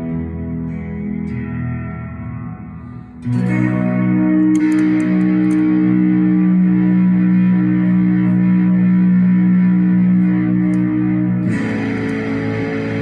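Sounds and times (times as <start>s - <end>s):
driven electric guitar chords: 0.0s - 13.0s.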